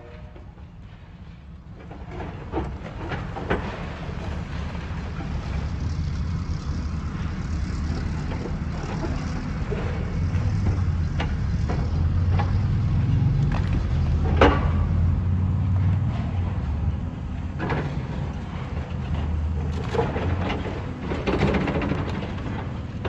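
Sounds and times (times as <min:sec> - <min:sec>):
heavy diesel engine rumbling: 0:00.0 - 0:23.0
metallic knocks and clanks: 0:08.4 - 0:15.2.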